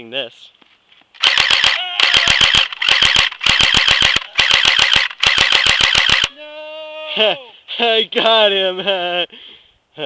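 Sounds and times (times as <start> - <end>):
airsoft gun automatic bursts: 1.2 - 6.3
drawn-out cry: 1.2 - 7.3.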